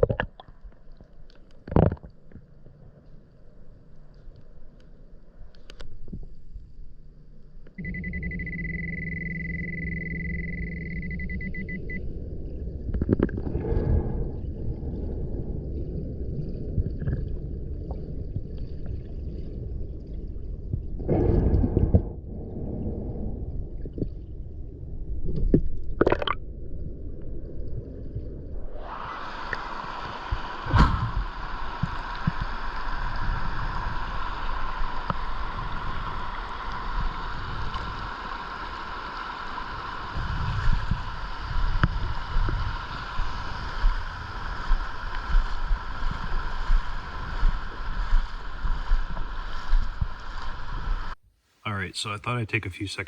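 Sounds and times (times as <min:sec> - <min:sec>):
underwater water rumble: 0:00.0 - 0:51.2
metal detector beep: 0:07.8 - 0:12.0.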